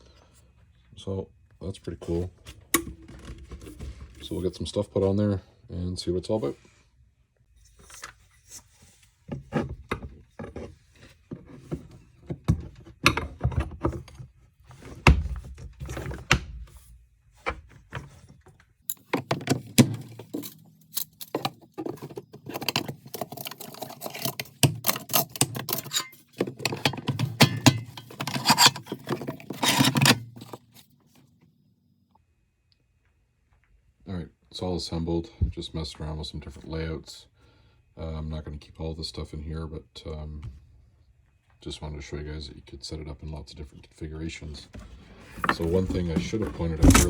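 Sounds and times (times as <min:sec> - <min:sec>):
items clicking and knocking in crate: 0:18.9 - 0:30.8, 0:44.8 - 0:47.0.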